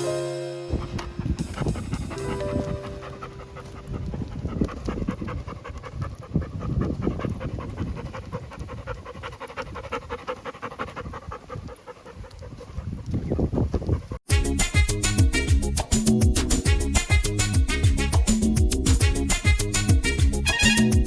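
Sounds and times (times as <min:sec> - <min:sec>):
background music: 0:00.0 - 0:03.8, 0:14.3 - 0:21.0
dog panting: 0:00.7 - 0:14.2, 0:16.5 - 0:21.0.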